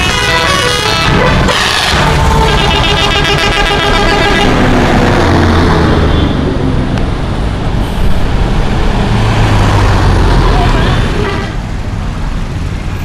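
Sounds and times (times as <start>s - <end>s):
multi-tone air horn tune: 0.0s - 4.6s
bus engine humming: 0.0s - 13.0s
traffic noise: 0.0s - 13.0s.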